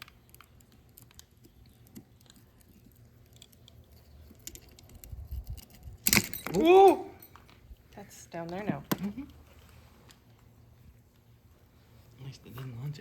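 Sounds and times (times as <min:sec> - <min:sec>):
screwdriver clicking and scraping metal: 0:00.0 - 0:06.6.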